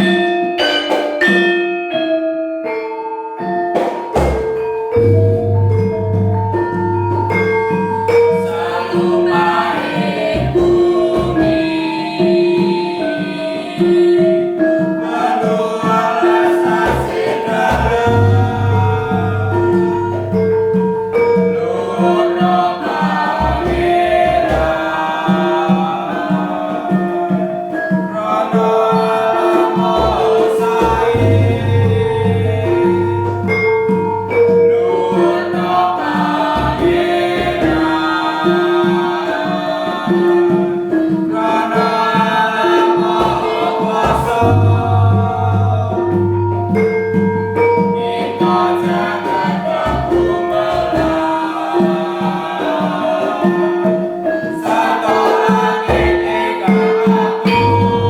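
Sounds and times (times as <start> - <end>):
metallophone melody: 0.0 - 58.0
voices singing: 3.8 - 58.0
low gong tones: 5.0 - 8.2, 57.5 - 58.0.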